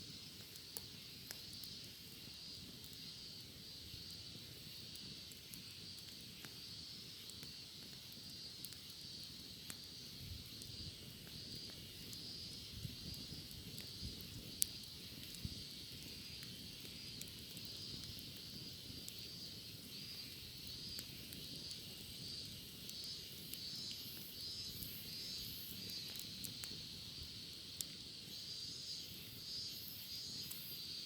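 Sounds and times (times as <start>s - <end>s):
bonfire crackling: 0.0s - 31.0s
higher pulsing insect call: 9.4s - 27.5s, 28.1s - 31.0s
cicadas singing: 10.5s - 31.0s.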